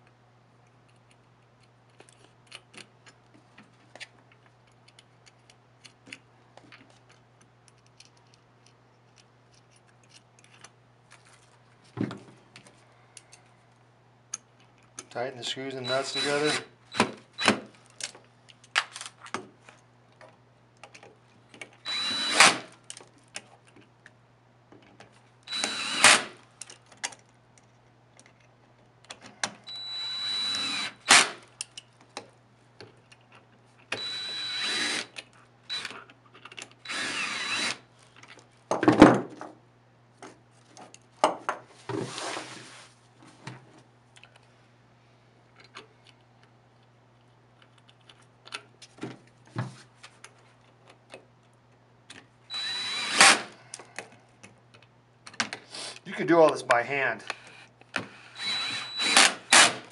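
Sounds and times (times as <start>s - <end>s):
cordless screw gun motor whining: 15.8s - 17.5s, 21.8s - 22.7s, 25.5s - 26.4s, 29.7s - 31.4s, 33.9s - 35.1s, 35.7s - 35.9s, 36.8s - 37.8s, 52.5s - 53.6s, 57.4s - 59.8s.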